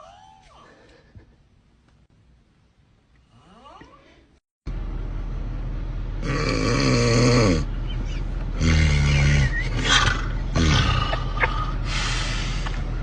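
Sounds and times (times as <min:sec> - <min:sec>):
steady low hum: 0:00.0 - 0:13.0
person snoring loudly: 0:06.2 - 0:07.7, 0:08.6 - 0:11.8.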